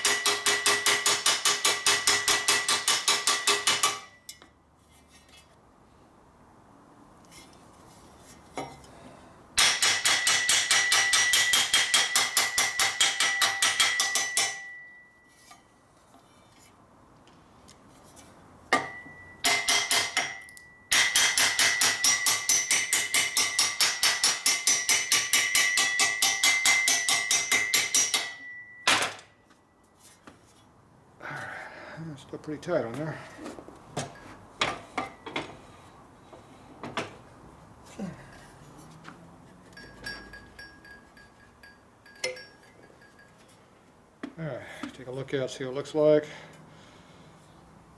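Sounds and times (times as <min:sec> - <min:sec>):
hammer tapping on metal pipe: 0:00.0 - 0:04.5, 0:09.6 - 0:15.0, 0:18.7 - 0:28.7.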